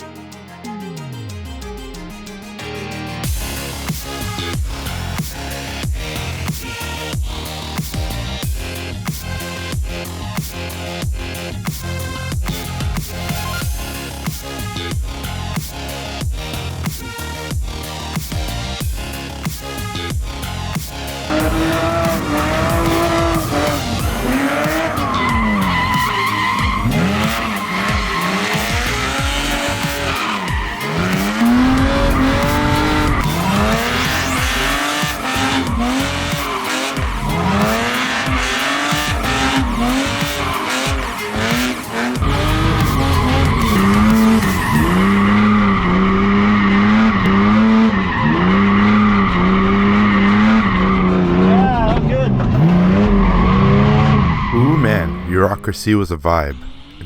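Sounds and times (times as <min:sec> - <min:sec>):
car engine revving: 0:21.1 - 0:55.3
tyres squealing: 0:21.3 - 0:51.9.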